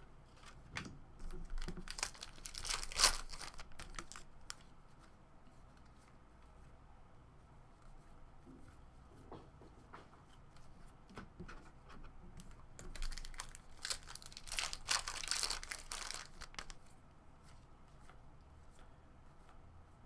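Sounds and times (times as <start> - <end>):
foil wrapper tearing and crinkling: 1.5 - 4.3, 12.9 - 16.8.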